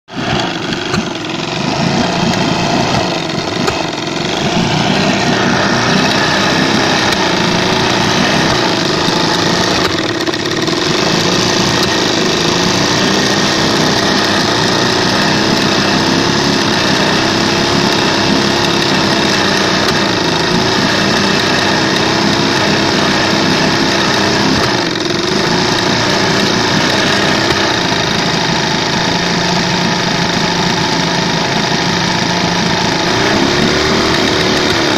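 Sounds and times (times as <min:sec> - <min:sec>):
outboard motor running unevenly: 0:00.1 - 0:34.9.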